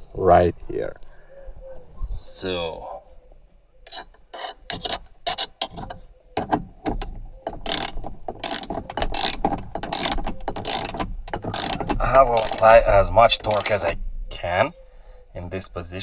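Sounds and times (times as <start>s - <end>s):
ratchet wrench clicking: 7.6s - 12.7s.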